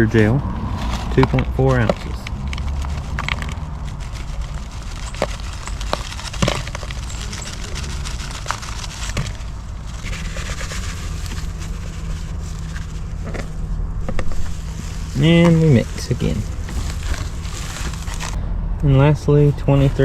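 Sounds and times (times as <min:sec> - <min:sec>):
steady low hum: 0:00.0 - 0:20.0
small clicks and crackles: 0:01.0 - 0:13.6.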